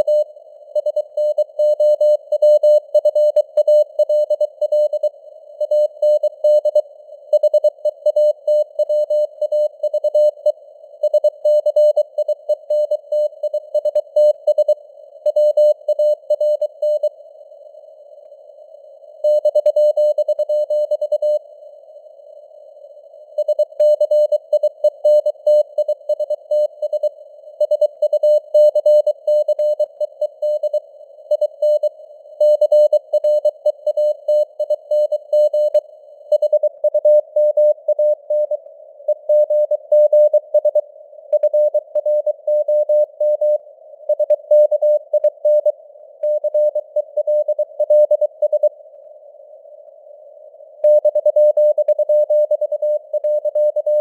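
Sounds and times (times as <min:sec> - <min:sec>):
morse code beeps: 0:50.9 - 0:54.0.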